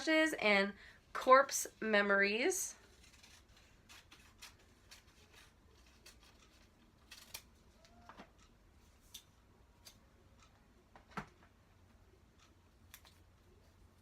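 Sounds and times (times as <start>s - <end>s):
scissors cutting paper: 2.8s - 7.7s.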